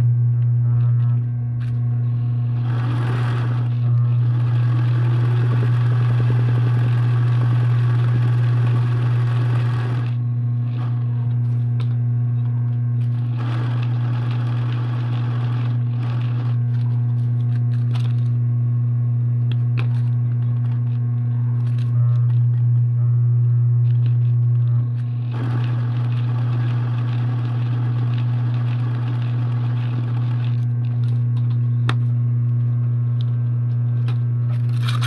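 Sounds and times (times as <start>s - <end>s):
low electrical hum: 0.0s - 35.0s
sewing machine stitching: 2.5s - 11.2s, 13.0s - 16.9s, 25.0s - 30.7s.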